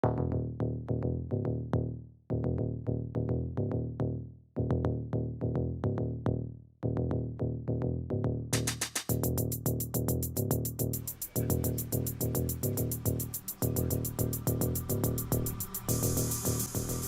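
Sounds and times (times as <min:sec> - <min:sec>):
synthesized electronic music: 0:08.6 - 0:17.0.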